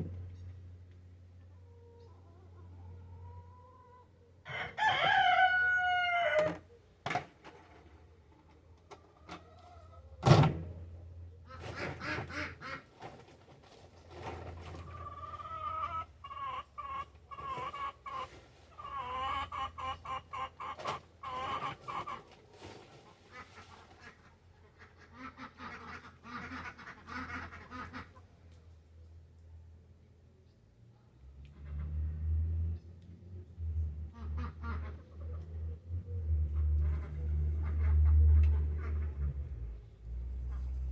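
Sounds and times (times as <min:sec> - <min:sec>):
chicken clucking: 0:01.4 - 0:06.8, 0:11.4 - 0:28.4, 0:34.1 - 0:39.8
rooster crowing: 0:04.5 - 0:06.6.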